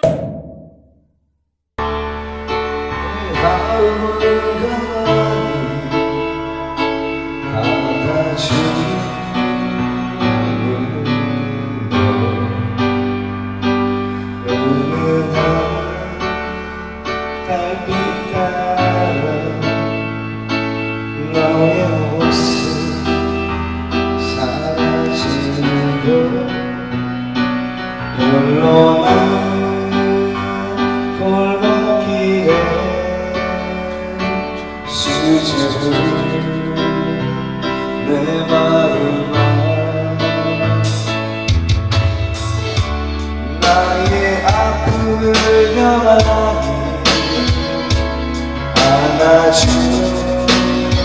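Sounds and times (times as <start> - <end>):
instrumental backing track: 1.8 - 51.0.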